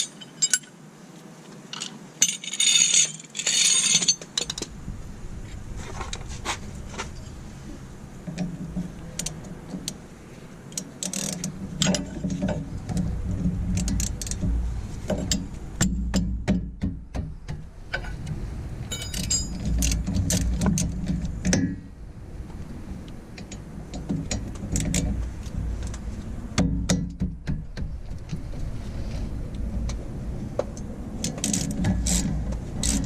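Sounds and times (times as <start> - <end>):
metal tools clinking: 0.0 - 0.8, 1.7 - 4.7, 18.9 - 20.6
low rumble: 4.6 - 10.6, 11.5 - 33.0.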